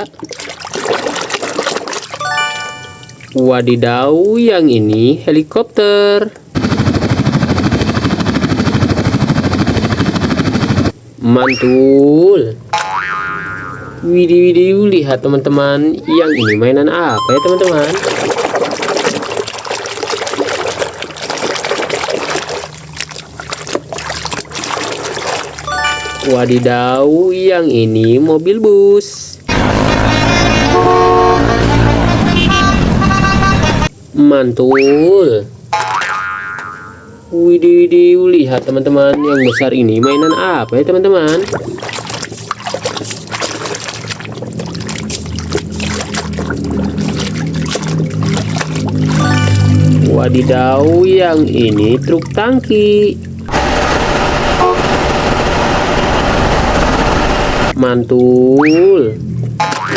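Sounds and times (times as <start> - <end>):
water dripping: 0.0 - 3.4, 40.5 - 53.5
water splashing and trickling: 0.0 - 3.6, 16.4 - 27.3, 39.4 - 53.5.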